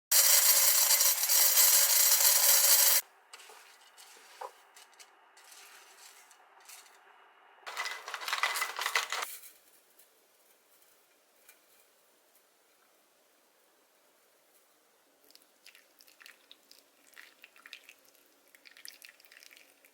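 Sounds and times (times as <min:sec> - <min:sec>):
coffee grinding rasp: 0:00.1 - 0:07.0.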